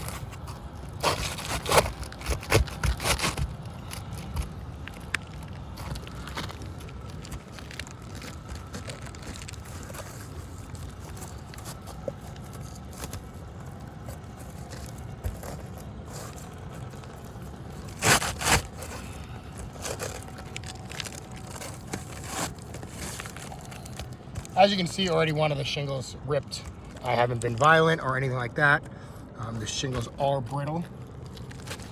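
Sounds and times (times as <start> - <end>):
shingle tearing cracks: 0.0 - 24.5
roof shingles scraping and crackling: 0.0 - 28.1, 29.0 - 31.9.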